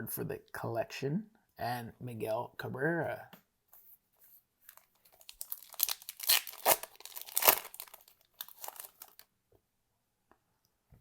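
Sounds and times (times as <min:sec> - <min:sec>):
card pack wrapper tearing: 0:04.7 - 0:09.2.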